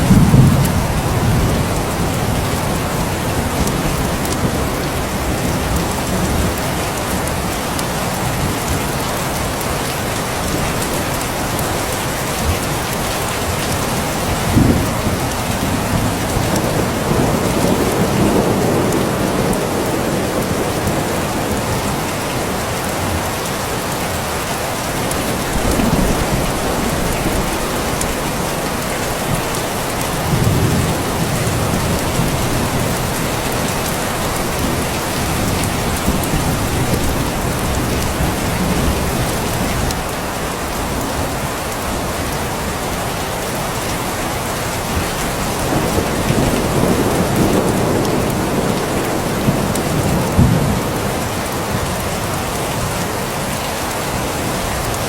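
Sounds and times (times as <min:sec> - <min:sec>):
low thunder rolls: 0:00.0 - 0:06.7, 0:25.2 - 0:40.1, 0:44.8 - 0:52.0
rain falling hard: 0:00.0 - 0:55.0.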